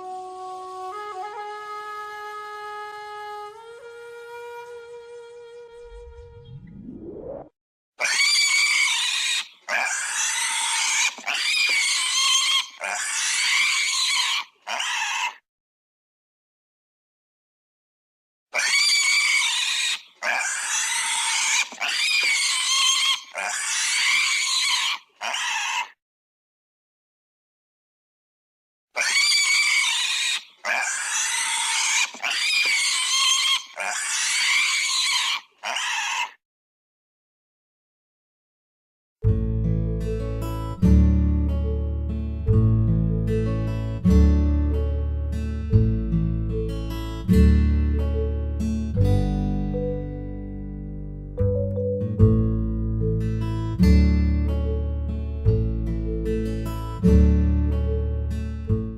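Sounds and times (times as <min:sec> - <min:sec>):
pig squealing: 0:08.0 - 0:15.4, 0:18.5 - 0:26.0, 0:29.0 - 0:36.4.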